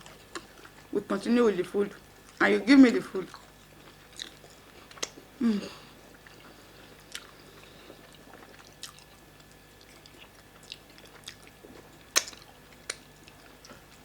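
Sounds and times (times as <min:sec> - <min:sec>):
wet chewing mouth smacks: 0:03.3 - 0:05.3, 0:07.1 - 0:07.4, 0:08.0 - 0:13.9.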